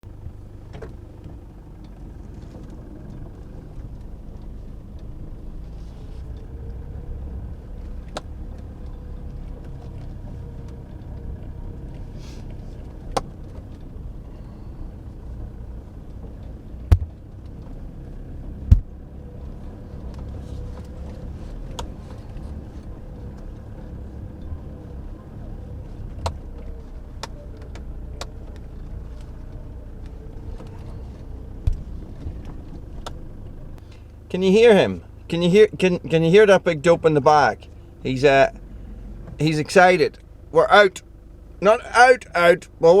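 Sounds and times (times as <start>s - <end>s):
road and engine rumble: 0.0s - 43.0s
loud thumps: 16.8s - 17.2s, 18.6s - 19.0s
sharp knocks: 18.7s - 19.0s.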